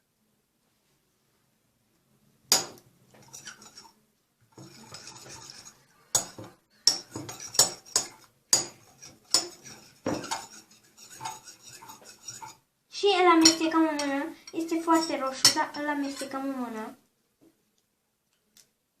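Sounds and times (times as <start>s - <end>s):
spoon stirring glue in container: 3.1s - 12.6s, 13.2s - 16.4s.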